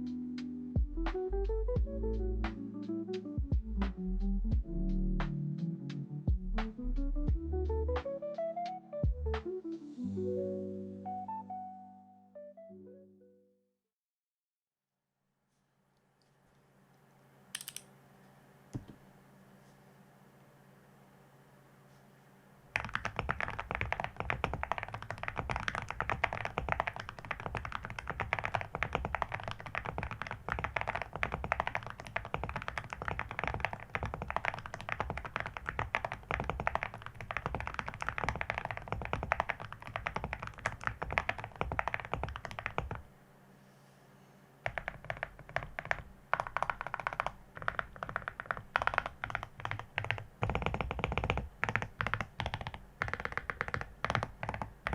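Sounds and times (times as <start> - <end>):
mechanical keyboard typing: 17.6 - 17.8, 22.8 - 43.0, 44.6 - 54.9.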